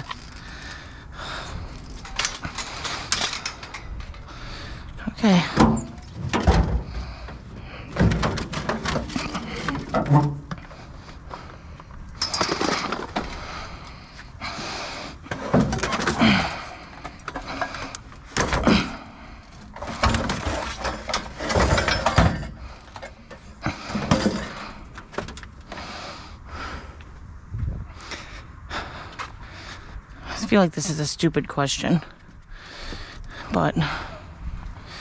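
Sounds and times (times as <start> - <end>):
scrap metal clanks and scrapes: 8.0 - 10.7, 19.6 - 25.4.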